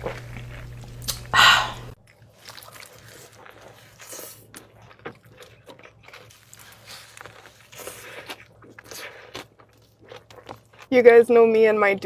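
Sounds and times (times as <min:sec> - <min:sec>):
wet mouth sounds: 0:00.0 - 0:02.0
person chewing crunchy food: 0:00.0 - 0:10.9.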